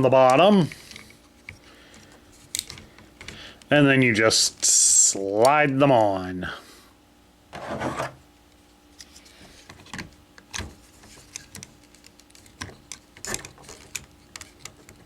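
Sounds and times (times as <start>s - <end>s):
plastic toy parts sliding scrape: 7.6s - 8.2s.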